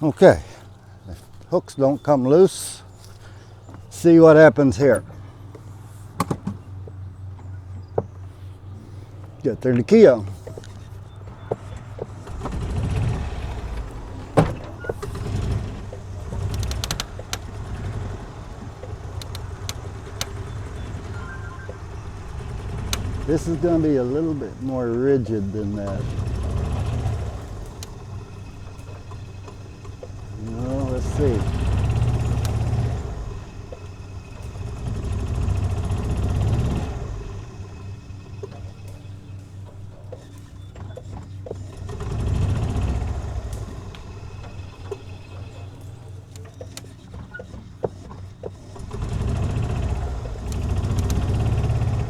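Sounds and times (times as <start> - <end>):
golf cart engine humming: 0.0 - 52.0
sharp clicks and knocks: 4.9 - 8.3, 9.1 - 52.0.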